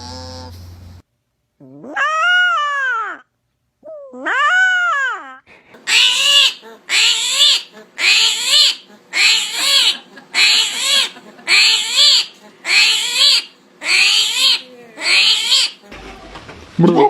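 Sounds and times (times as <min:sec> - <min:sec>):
animal squealing chirps: 0:04.2 - 0:15.8.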